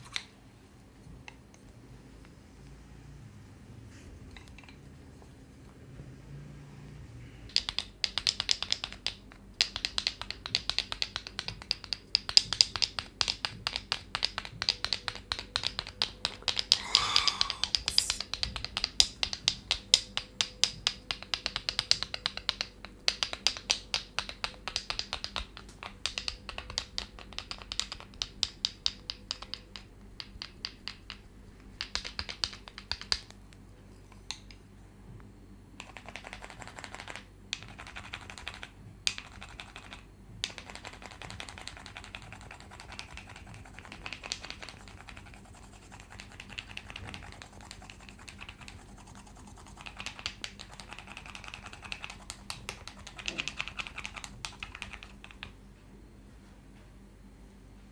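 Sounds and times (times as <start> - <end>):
rapid tapping clicks: 35.8 - 55.5.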